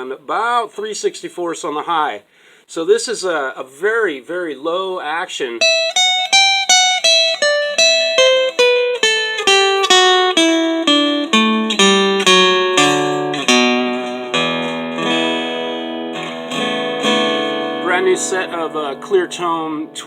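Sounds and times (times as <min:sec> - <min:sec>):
acoustic guitar chord ringing: 0:05.6 - 0:20.0
acoustic guitar plucked notes: 0:05.6 - 0:20.0.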